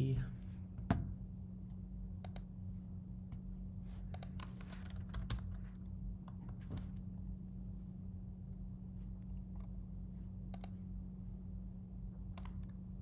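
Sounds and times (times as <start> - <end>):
low electrical hum: 0.0 - 13.0
computer keyboard typing: 4.1 - 6.8, 12.3 - 12.8.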